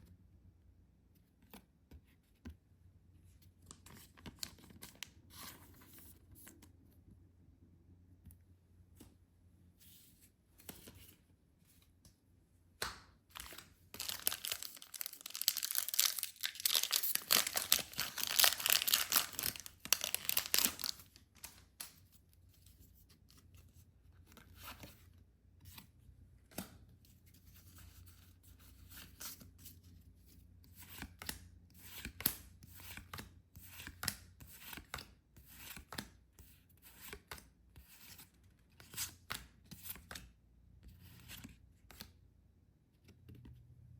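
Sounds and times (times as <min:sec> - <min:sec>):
packaging ripping: 0:13.3 - 0:21.1.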